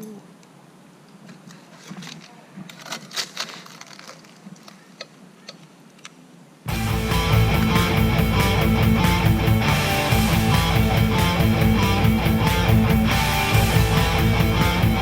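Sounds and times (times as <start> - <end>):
strummed guitar music: 6.7 - 15.0.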